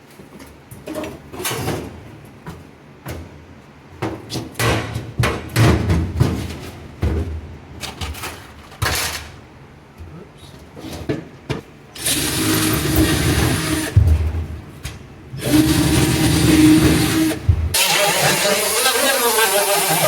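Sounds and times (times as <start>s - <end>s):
metal parts knocking and clunking: 4.6s - 9.4s.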